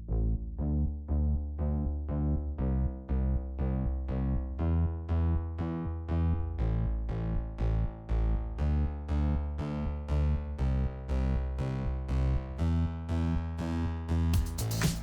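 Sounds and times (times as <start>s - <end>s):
heavy bass: 0.0s - 15.0s
synthesizer keyboard chords: 9.0s - 15.0s
drum and percussion beat: 14.4s - 15.0s.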